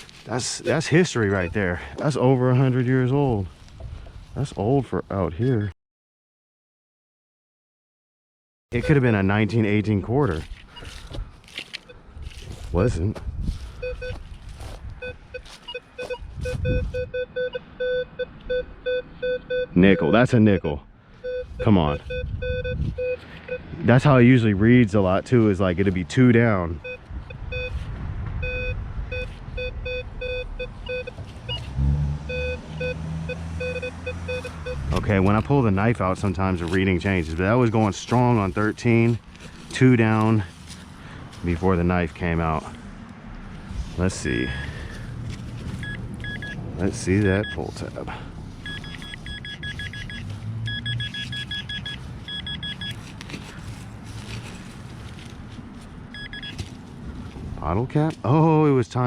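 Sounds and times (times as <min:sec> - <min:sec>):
handling and ground noise: 0:00.0 - 0:04.8, 0:08.8 - 0:17.0, 0:34.4 - 0:49.2, 0:51.2 - 0:58.6
metal detector beeps: 0:01.1 - 0:02.0, 0:08.8 - 0:09.2, 0:13.8 - 0:14.2, 0:15.0 - 0:23.8, 0:26.8 - 0:27.8, 0:28.4 - 0:31.7, 0:32.3 - 0:35.1, 0:45.8 - 0:47.7, 0:48.6 - 0:53.0, 0:56.1 - 0:56.6.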